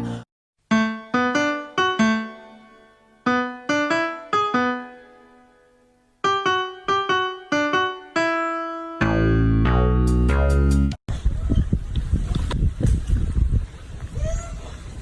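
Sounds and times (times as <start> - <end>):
solo piano melody: 0.7 - 10.0.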